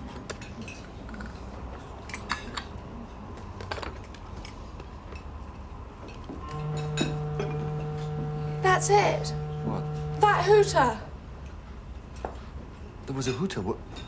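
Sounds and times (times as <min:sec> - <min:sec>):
low horn note: 0:06.4 - 0:11.1.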